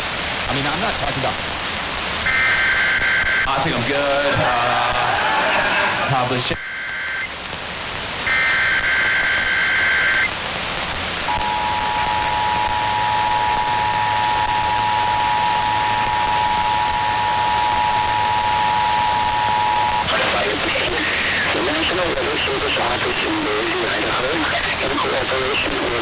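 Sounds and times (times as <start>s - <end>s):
steady hiss: 0.0s - 26.0s
warbling data tones: 2.2s - 3.9s, 6.5s - 7.4s, 8.2s - 10.3s, 11.2s - 22.6s
two-tone attention signal: 2.3s - 3.5s, 6.6s - 7.3s, 8.3s - 10.3s, 11.3s - 20.1s.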